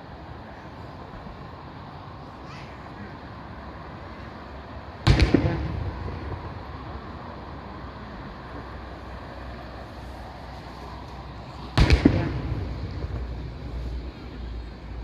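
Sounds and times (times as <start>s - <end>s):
low background noise: 0.0s - 15.0s
fireworks bursting with echo: 5.0s - 7.0s, 11.6s - 14.6s.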